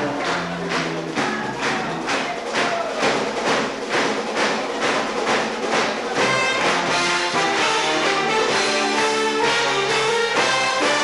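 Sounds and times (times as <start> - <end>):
dance band percussive beat: 0.0 - 11.0
brass section chords: 6.2 - 11.0.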